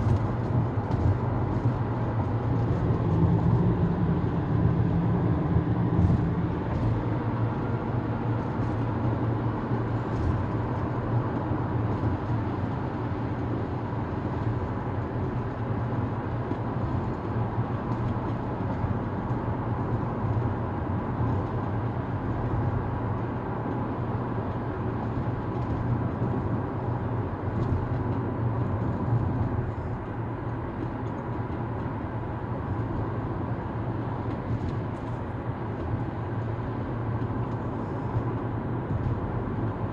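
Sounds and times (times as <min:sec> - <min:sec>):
vehicle running drone: 0:00.0 - 0:14.4.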